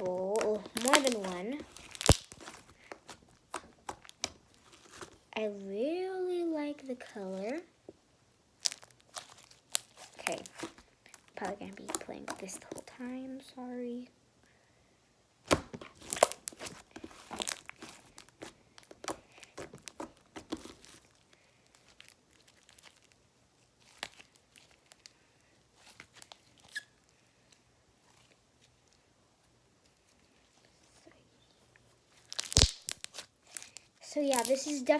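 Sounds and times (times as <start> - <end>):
slime squishing with clicks and pops: 0.0 - 5.2, 8.6 - 13.0, 15.4 - 21.2, 32.3 - 34.9.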